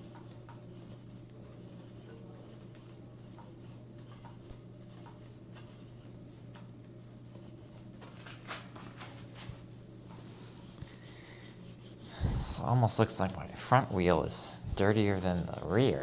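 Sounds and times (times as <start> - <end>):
steady low hum: 0.0 - 16.0.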